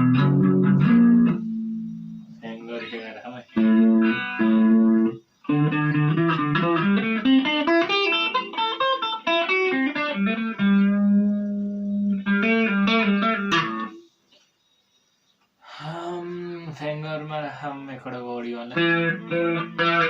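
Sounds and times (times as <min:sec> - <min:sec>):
electric guitar with chorus effect: 0:00.0 - 0:02.4, 0:03.6 - 0:14.0, 0:18.7 - 0:20.0.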